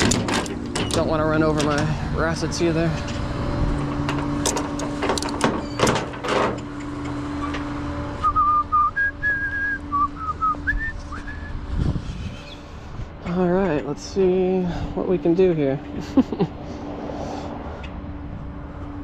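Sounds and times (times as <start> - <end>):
tow straps and hooks clanking: 0.0 - 1.9, 3.0 - 7.6
steady hum: 0.0 - 19.0
person whistling a tune: 8.2 - 11.6.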